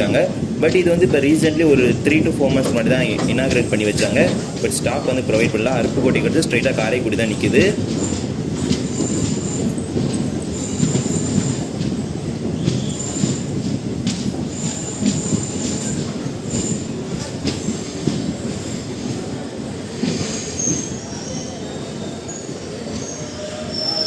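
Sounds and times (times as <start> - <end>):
train wheels rumbling on track: 0.0 - 24.0
train wheel knocks: 2.5 - 4.8, 7.4 - 19.2.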